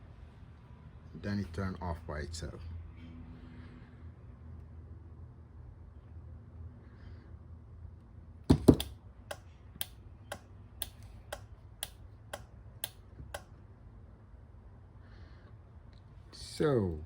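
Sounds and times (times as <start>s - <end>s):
sharp knocks: 8.5s - 8.9s
car alarm relay clicking: 8.5s - 13.5s.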